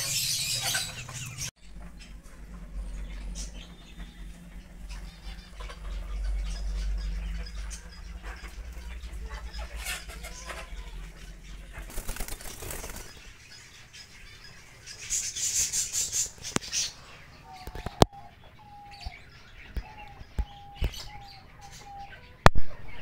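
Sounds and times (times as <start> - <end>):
high-pitched bird chirping: 0.0 - 23.0
low rumble: 0.5 - 15.2
birds flapping wings: 11.5 - 13.4.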